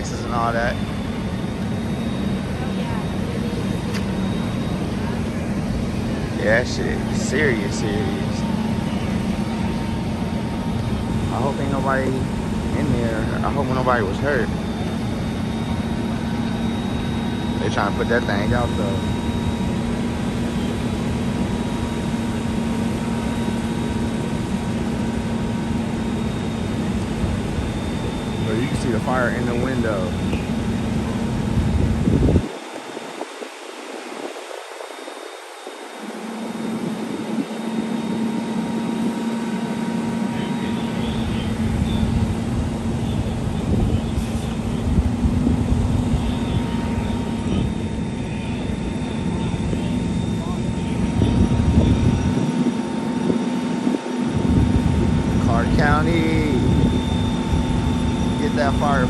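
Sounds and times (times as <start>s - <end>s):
engine running steadily: 0.0s - 59.0s
low rumble: 40.4s - 59.0s.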